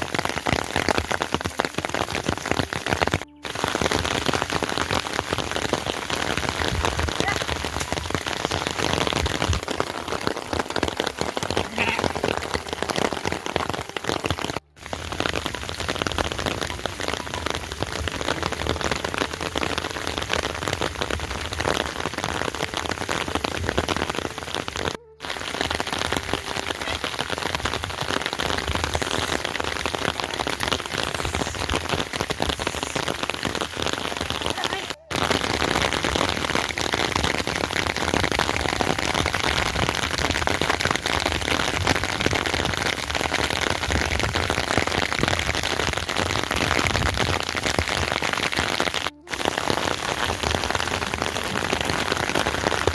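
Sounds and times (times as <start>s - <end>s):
heavy rain patter: 0.0s - 52.9s.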